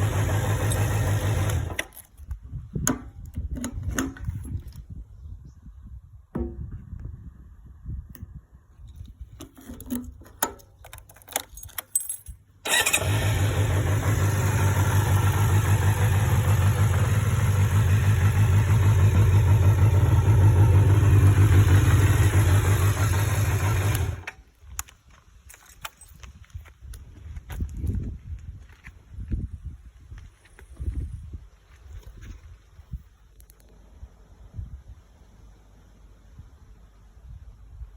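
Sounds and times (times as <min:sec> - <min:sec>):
motorcycle engine running: 0:00.0 - 0:01.8, 0:12.7 - 0:24.3.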